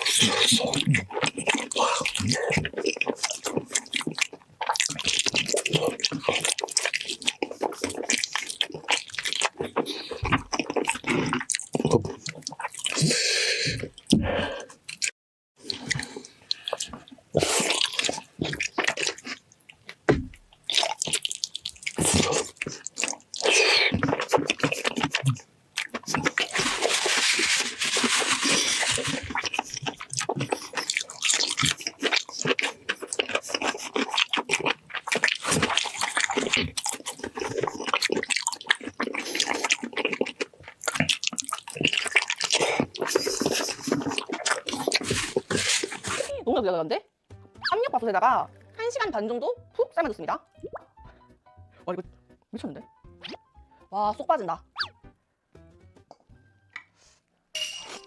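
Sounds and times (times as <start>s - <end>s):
wet chewing and lip-smacking: 0.0s - 46.4s.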